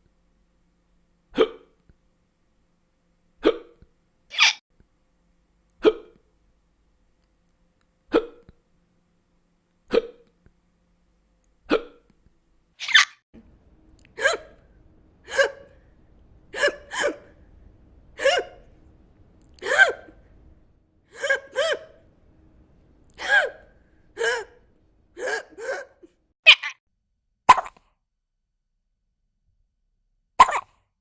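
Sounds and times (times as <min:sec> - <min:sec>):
person hiccupping: 0:01.3 - 0:01.8, 0:03.4 - 0:03.8, 0:05.8 - 0:06.2, 0:08.1 - 0:08.6, 0:09.9 - 0:10.4, 0:11.7 - 0:12.1.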